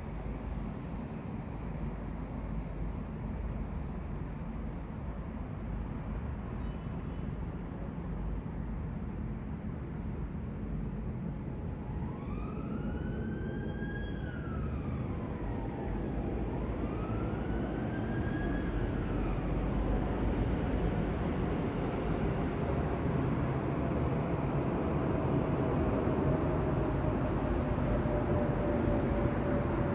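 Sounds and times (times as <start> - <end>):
jet engines rumbling overhead: 7.8 - 29.9
distant siren wailing: 11.9 - 20.2.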